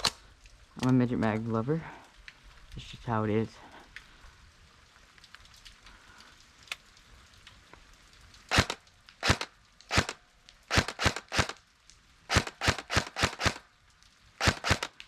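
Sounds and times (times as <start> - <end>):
airsoft rifle single shots: 8.5 - 11.6, 12.3 - 13.6, 14.4 - 15.0.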